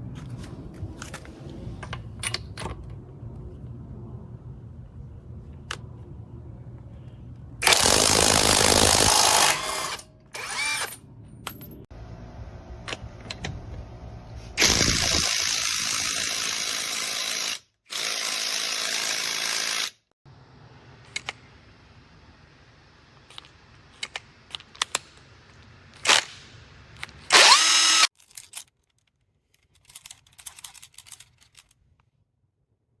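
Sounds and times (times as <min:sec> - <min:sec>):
cordless impact wrench bursts: 0:07.6 - 0:10.9, 0:14.6 - 0:19.9, 0:27.3 - 0:28.1.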